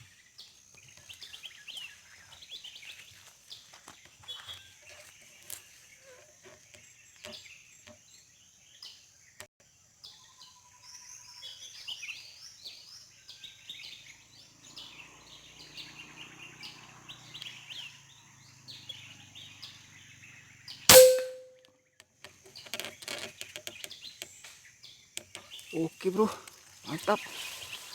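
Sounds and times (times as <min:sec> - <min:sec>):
air rifle shot: 0:20.9 - 0:21.5.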